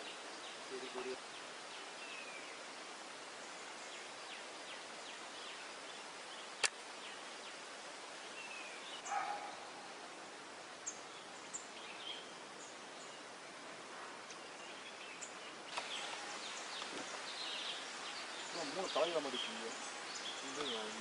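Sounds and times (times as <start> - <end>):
steady outdoor hiss: 0.0 - 21.0
sharp click: 6.6 - 6.8
bird chirps: 8.4 - 9.8, 14.2 - 21.0.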